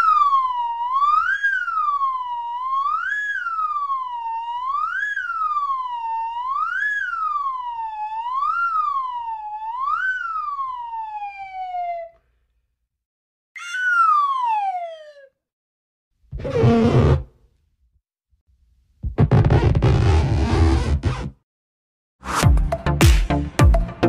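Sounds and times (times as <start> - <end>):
cartoon siren wailing: 0.0 - 12.2, 13.6 - 15.4.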